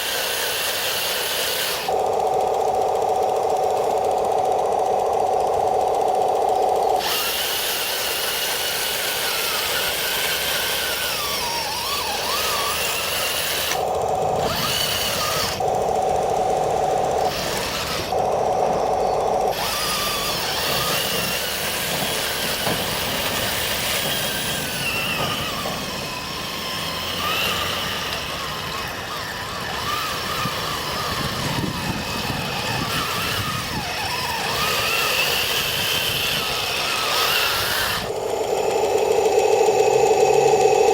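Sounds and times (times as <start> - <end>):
steady mid-pitched hum: 0.0 - 24.4, 28.3 - 40.9
electric motors whining: 0.0 - 40.9.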